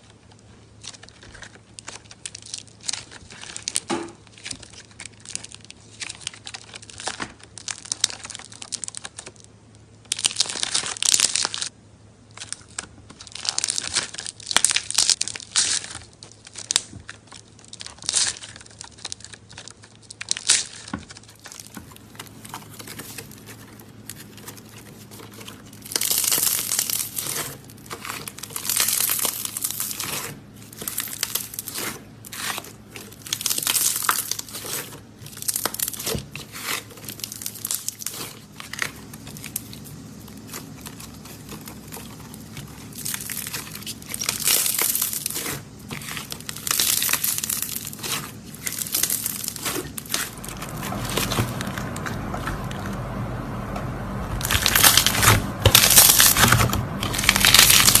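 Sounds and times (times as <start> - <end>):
dull steady squeezing sound: 0.0 - 58.0
putty crackling and popping: 12.3 - 53.1, 54.3 - 58.0.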